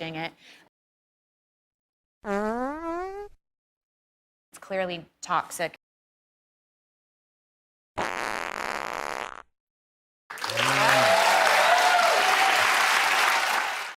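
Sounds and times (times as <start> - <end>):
wet fart sound effects: 2.2 - 3.4, 8.0 - 9.6.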